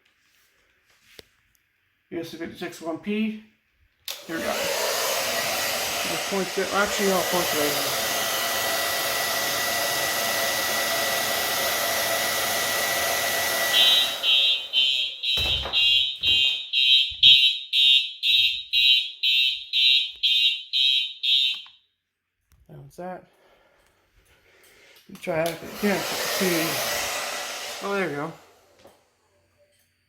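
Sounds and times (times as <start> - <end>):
hot-air blower whistling: 4.1 - 16.6, 25.3 - 29.0
fire alarm beeping: 13.7 - 21.8.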